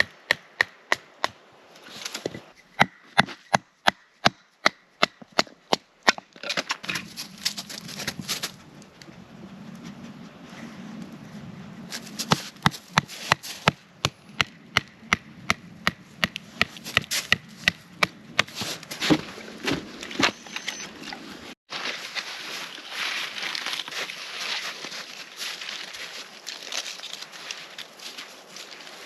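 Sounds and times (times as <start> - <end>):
wood being chopped: 0.0 - 1.4, 2.7 - 7.0, 12.2 - 20.4.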